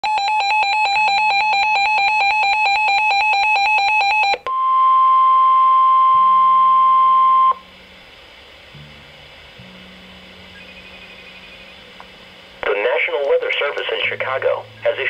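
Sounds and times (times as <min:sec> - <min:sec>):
faint hum: 0:04.4 - 0:15.0
steady alarm tone: 0:09.7 - 0:12.6
fast electronic beeping: 0:10.5 - 0:11.9.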